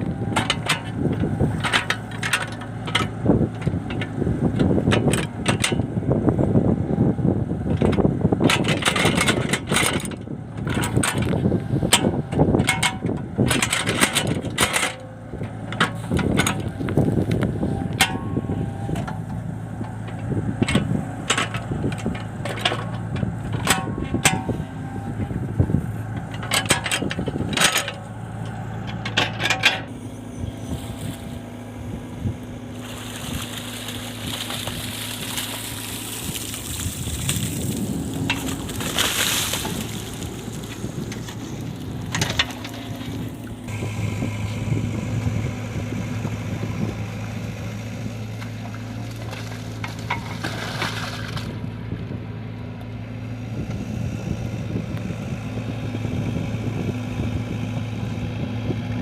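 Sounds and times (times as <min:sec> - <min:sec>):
diesel engine running: 0:00.0 - 0:59.0
bucket clanking: 0:32.8 - 0:43.2, 0:49.2 - 0:51.5.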